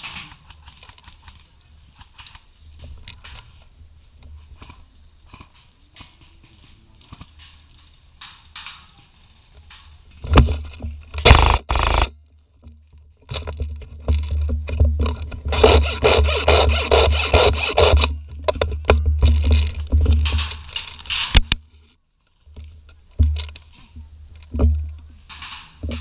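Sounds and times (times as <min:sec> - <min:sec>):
loud scraping and rubbing: 0:15.5 - 0:18.1.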